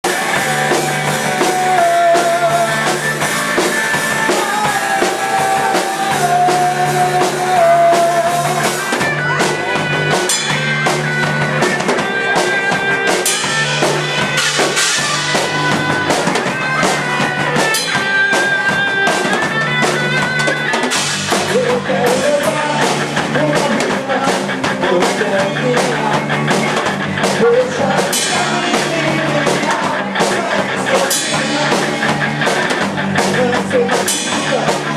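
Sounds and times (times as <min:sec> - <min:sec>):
drum kit: 0:00.0 - 0:34.9
guitar: 0:00.0 - 0:34.9.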